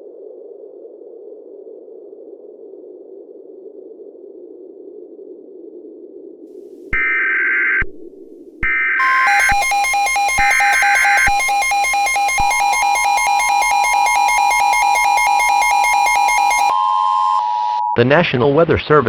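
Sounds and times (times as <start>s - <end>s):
rapidly pulsing alarm tone: 8.7s - 18.0s
harsh digital data bursts: 9.0s - 17.4s
steady high tone: 9.0s - 18.2s.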